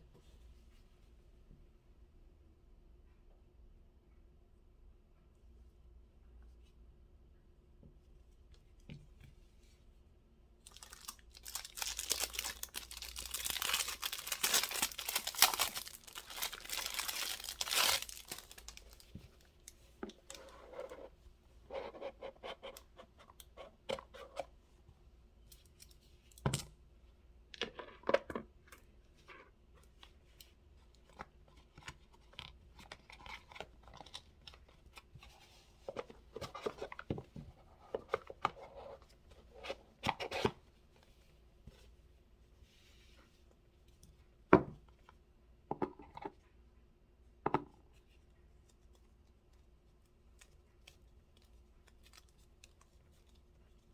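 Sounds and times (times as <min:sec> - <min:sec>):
packaging tearing and crinkling: 0:10.7 - 0:19.1.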